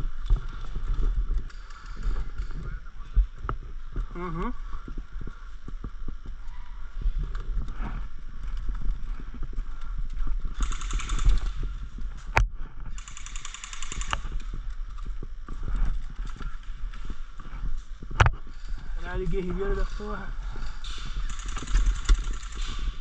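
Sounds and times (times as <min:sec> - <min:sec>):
footsteps: 0:00.0 - 0:23.0
airsoft gunfire bursts: 0:10.6 - 0:11.6, 0:13.0 - 0:14.3.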